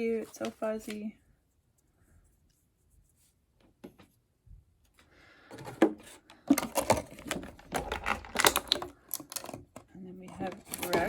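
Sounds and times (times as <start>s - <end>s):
plastic packaging crinkling: 6.5s - 9.6s.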